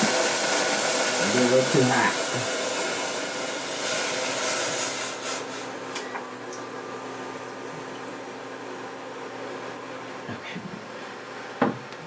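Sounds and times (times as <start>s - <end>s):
strong hiss: 0.0s - 5.7s
cooking appliance humming: 0.0s - 12.0s.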